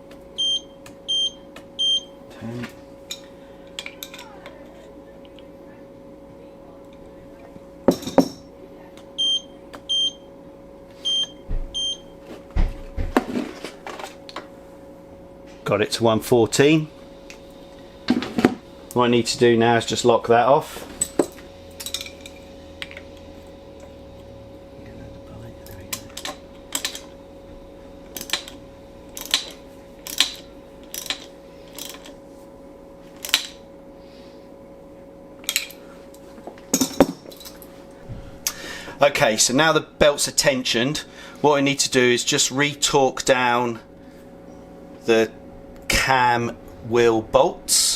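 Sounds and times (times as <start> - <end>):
steady hum: 0.0 - 47.9
tools and parts clattering: 7.9 - 8.4, 20.9 - 22.4, 29.2 - 32.2, 36.6 - 37.6.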